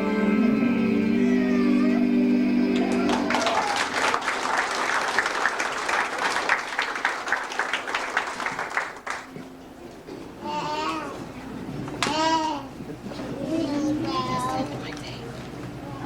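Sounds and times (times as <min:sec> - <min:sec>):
congregation applauding: 0:02.7 - 0:09.5.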